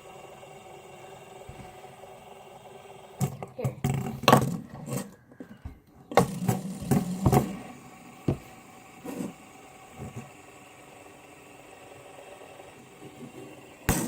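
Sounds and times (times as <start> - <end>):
fidget spinner whirring buzz: 0.0 - 5.1, 6.1 - 14.0
fidget spinner clicks and knocks: 13.0 - 14.0.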